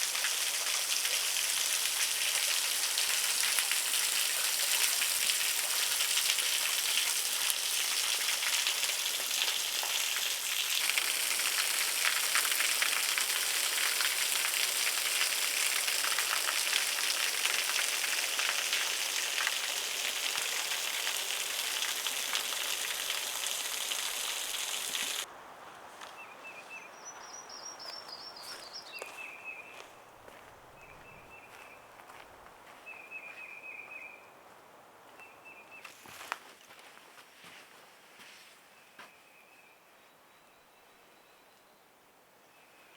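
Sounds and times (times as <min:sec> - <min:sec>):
water splashing and trickling: 0:00.0 - 0:25.3.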